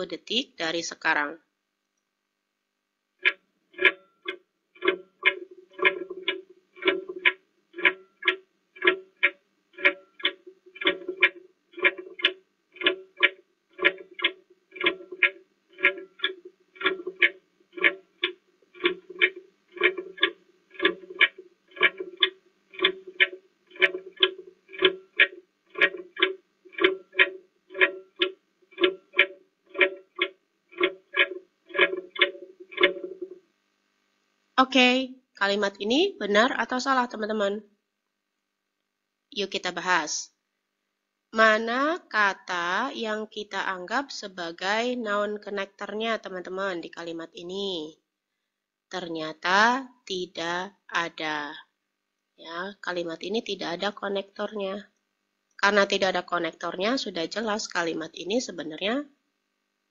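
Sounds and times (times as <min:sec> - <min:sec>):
countdown timer ticking: 0:03.2 - 0:33.4.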